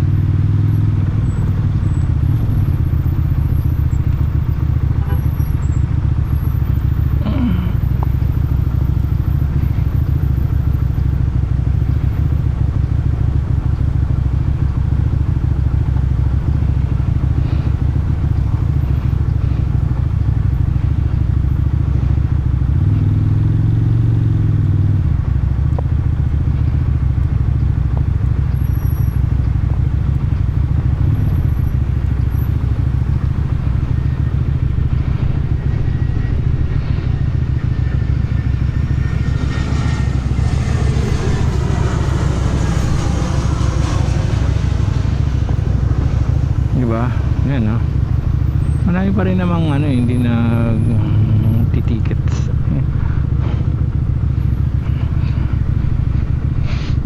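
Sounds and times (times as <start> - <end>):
motorcycle engine running: 0.0 - 57.0
rising and falling tone: 38.6 - 47.4.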